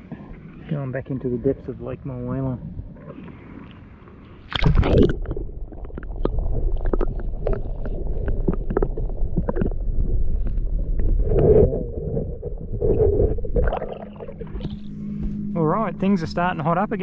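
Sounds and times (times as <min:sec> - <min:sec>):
water sloshing and dripping: 0:02.6 - 0:11.6, 0:12.2 - 0:15.5
fish splashing into water: 0:04.4 - 0:09.8
wind rumble on microphone: 0:04.6 - 0:17.0.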